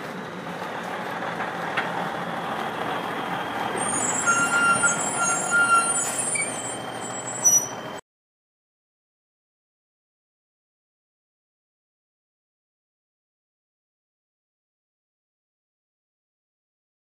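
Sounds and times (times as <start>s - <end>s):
brakes squealing: 0.0s - 8.0s
heavy truck engine and tyres: 0.0s - 8.0s.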